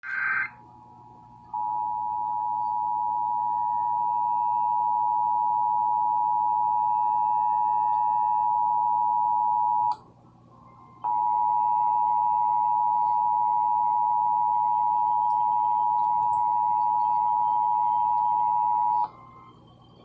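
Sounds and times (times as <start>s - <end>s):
buzzing data burst: 0.0s - 0.5s.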